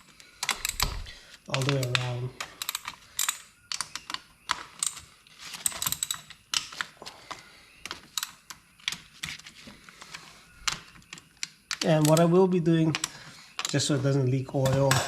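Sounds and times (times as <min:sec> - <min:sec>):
socket ratchet clicking: 0:05.7 - 0:06.7.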